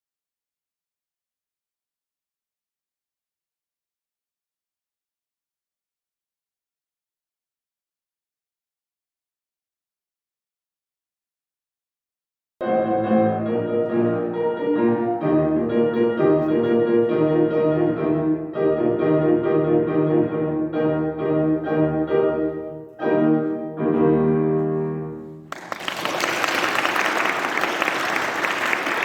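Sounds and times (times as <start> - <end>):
piano piece: 12.6 - 29.0
audience applauding: 25.5 - 29.0.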